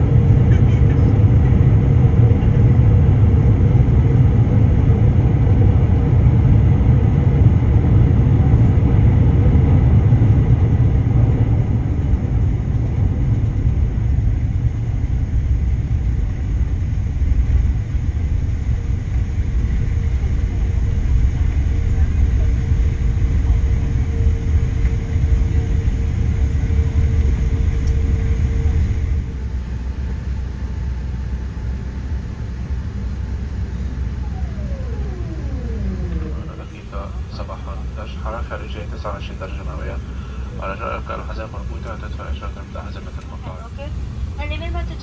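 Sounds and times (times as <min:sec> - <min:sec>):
aircraft cabin rumble: 0:00.0 - 0:45.0
faint steady hum: 0:10.2 - 0:45.0.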